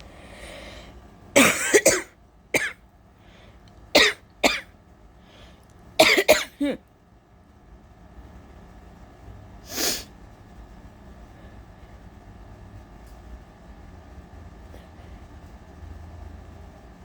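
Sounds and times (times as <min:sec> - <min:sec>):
woman coughing: 0:01.4 - 0:02.8, 0:04.0 - 0:04.7, 0:06.0 - 0:06.8.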